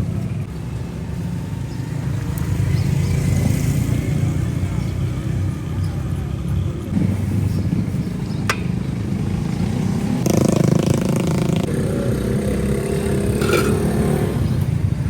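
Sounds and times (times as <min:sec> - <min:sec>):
passing vehicle engines: 0:01.2 - 0:15.0
motorcycle passing close: 0:08.3 - 0:15.0.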